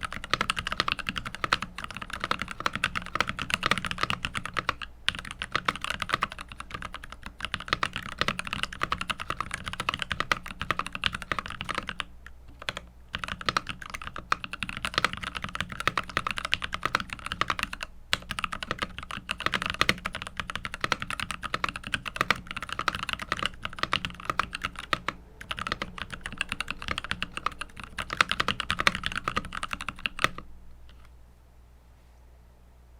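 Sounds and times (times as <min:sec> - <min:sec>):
rapid typing on mechanical keyboard: 0:00.0 - 0:31.1.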